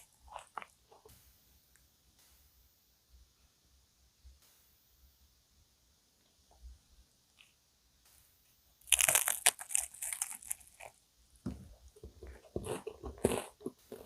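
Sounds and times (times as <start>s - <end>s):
crunching into crisp pastry: 0.0s - 1.1s, 8.8s - 11.0s, 12.2s - 14.0s
wet chewing: 0.0s - 1.1s, 8.8s - 11.0s, 11.9s - 14.0s.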